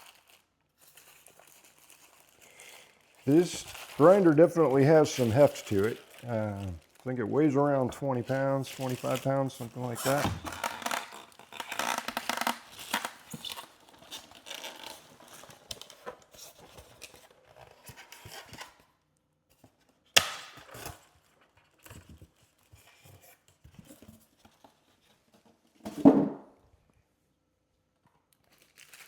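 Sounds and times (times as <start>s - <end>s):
packaging rustling and tearing: 0.0s - 18.8s, 28.3s - 29.0s.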